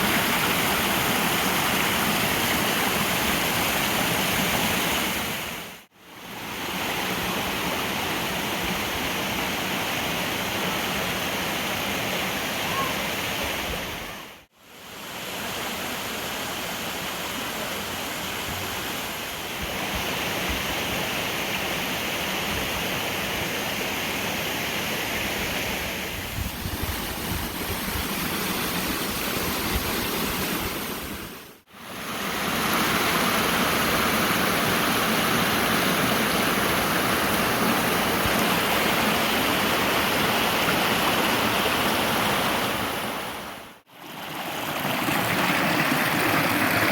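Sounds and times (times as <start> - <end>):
waterfall rushing: 0.0 - 14.3, 27.6 - 46.9.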